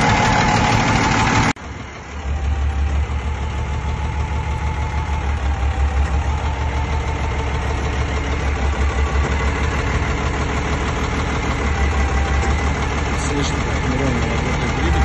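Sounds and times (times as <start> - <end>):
diesel engine idling: 0.0 - 15.0.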